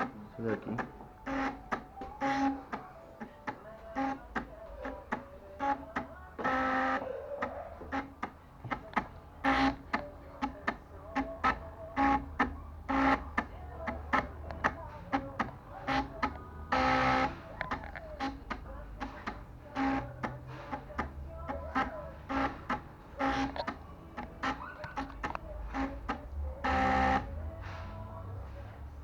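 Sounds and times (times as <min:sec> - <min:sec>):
stepper motors buzzing and clicking: 0:07.9 - 0:10.6, 0:11.2 - 0:27.3.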